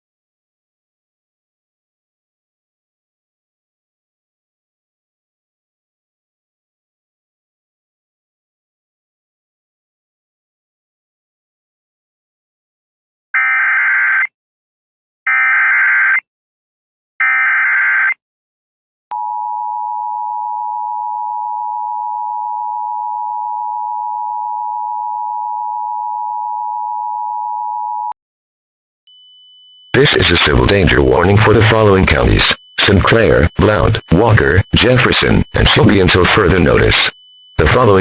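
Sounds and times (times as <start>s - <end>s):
faint high beep: 29.1s - 38.0s
two-tone attention signal: 29.1s - 38.0s
warbling data bursts: 30.0s - 38.0s.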